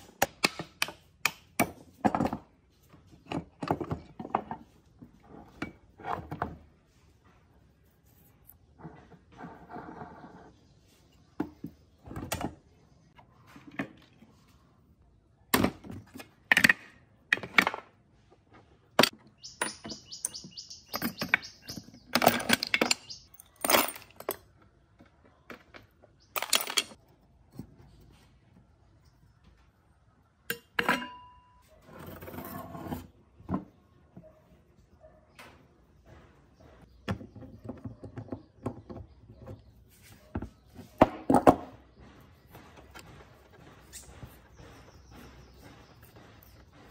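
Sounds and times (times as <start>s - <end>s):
metal clinks and knocks: 19.0s - 24.7s, 25.6s - 27.7s.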